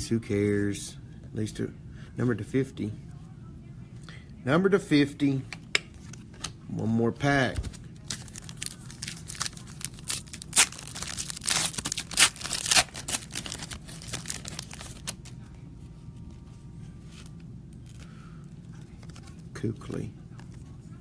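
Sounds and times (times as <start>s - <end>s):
faint rustling of cards: 5.9s - 21.0s
foil wrapper ripping and crinkling: 8.0s - 15.4s.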